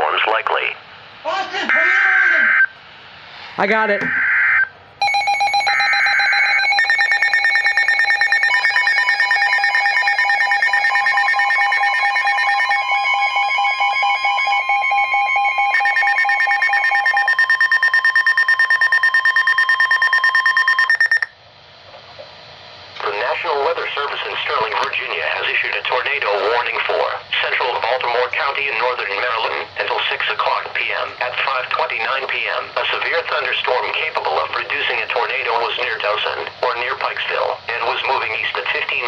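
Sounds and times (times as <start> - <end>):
electronic alarm tones beeping: 4.0 - 21.4
digital alert header data: 5.0 - 12.8.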